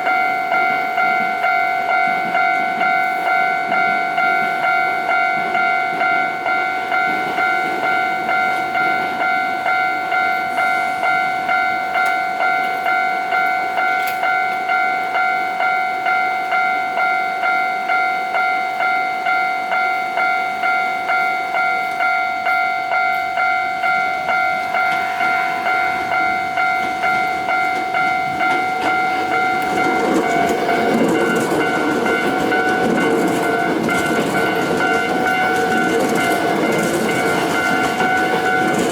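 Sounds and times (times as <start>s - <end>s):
level crossing warning bell: 0.0s - 38.9s
train rumble and wheel clatter: 0.0s - 38.9s.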